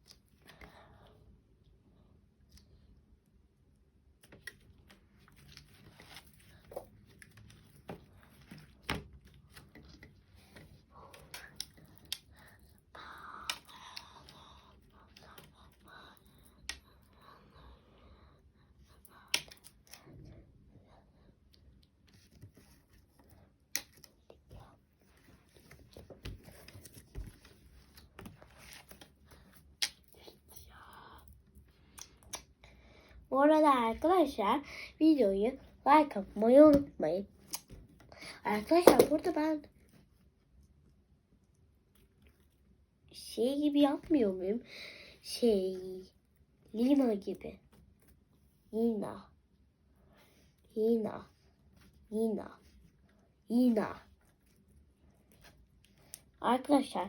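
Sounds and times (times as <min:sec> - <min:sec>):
small clicks and crinkling: 0:04.2 - 0:12.8.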